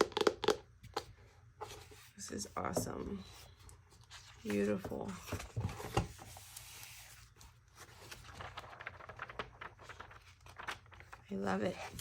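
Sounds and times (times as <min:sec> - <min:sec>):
packaging rustling and crinkling: 0:05.2 - 0:12.0.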